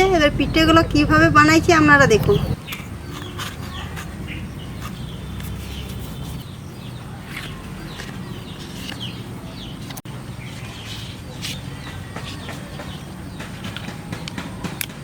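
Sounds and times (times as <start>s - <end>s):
steady low hum: 0.0s - 2.6s
birds chirping: 0.0s - 15.0s.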